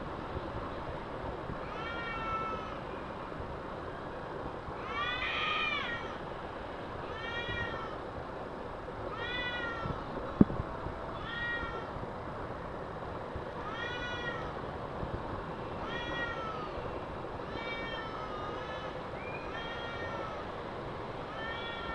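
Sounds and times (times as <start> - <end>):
cats yowling: 1.6 - 2.8, 9.2 - 10.0, 13.6 - 14.5, 15.8 - 16.8, 17.4 - 20.4, 21.3 - 21.9.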